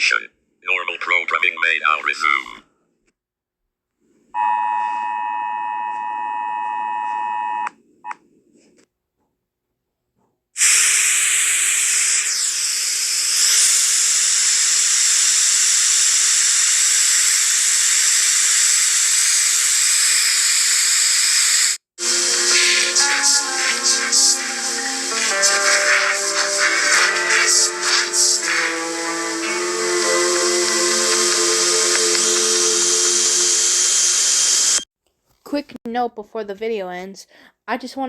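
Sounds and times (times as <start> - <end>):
tv static hiss: 22.0 - 34.8.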